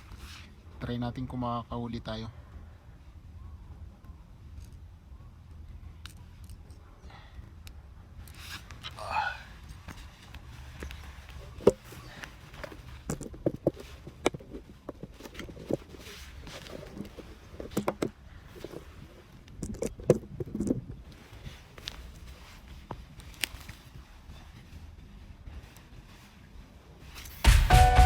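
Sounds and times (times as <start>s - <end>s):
fishing tackle clicking and knocking: 9.7s - 20.9s.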